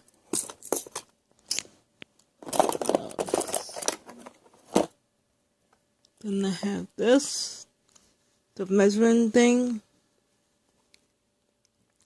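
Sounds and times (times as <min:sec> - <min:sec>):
crinkly rustling: 0:02.4 - 0:04.9.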